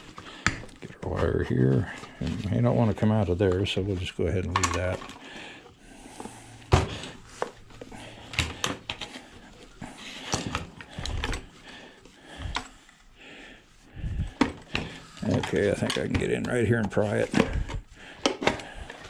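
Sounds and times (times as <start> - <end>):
hand tools and metal parts knocking: 4.3 - 5.2, 14.4 - 19.0.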